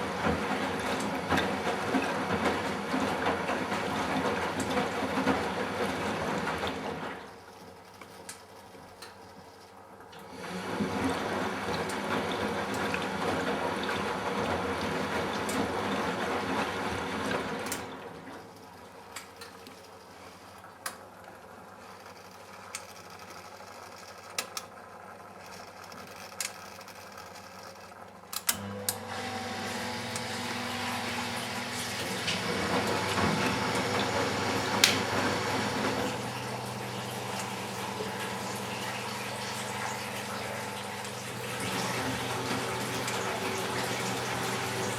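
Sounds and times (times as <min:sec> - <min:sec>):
water rushing into washing machine: 0:00.0 - 0:08.4, 0:09.0 - 0:25.8, 0:28.3 - 0:44.9
low machine hum: 0:27.9 - 0:44.9.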